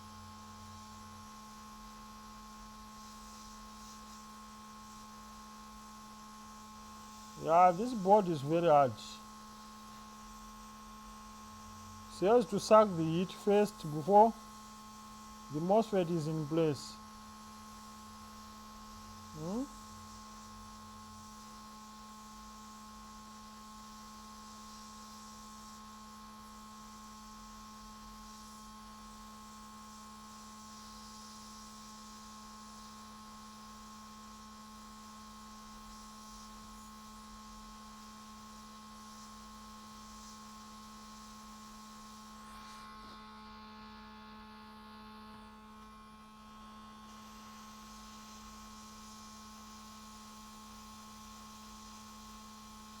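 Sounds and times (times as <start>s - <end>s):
hot air station humming and hissing: 6.8s - 17.9s, 19.2s - 22.4s.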